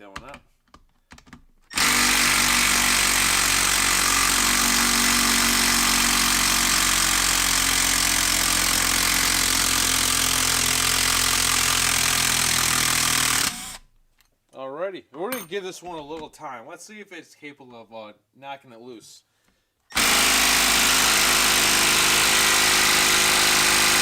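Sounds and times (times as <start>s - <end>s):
impact driver hammering: 1.7s - 13.8s, 19.9s - 24.0s.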